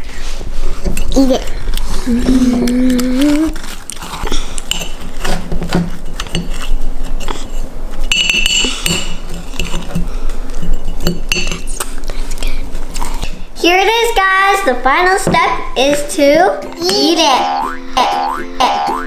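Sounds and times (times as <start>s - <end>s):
spoon scraping and clinking in cup: 4.6s - 11.8s.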